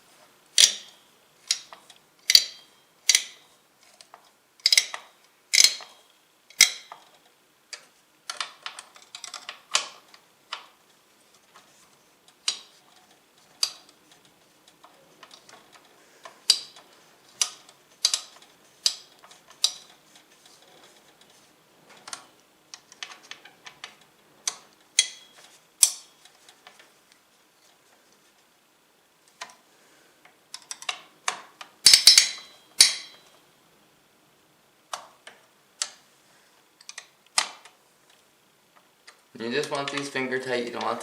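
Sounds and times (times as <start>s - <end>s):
screwdriver metallic clicks: 1.5s - 3.4s, 4.6s - 5.9s.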